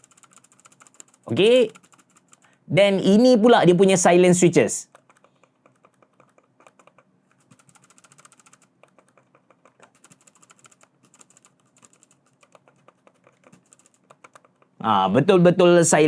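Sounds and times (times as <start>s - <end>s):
soft mouse clicks: 0.0s - 2.5s, 4.9s - 14.8s.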